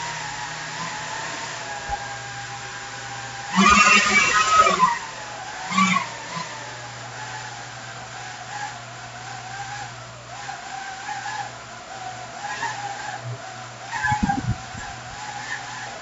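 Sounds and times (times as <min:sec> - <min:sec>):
propeller motors whining: 0:00.0 - 0:16.0
low hum: 0:14.0 - 0:15.2.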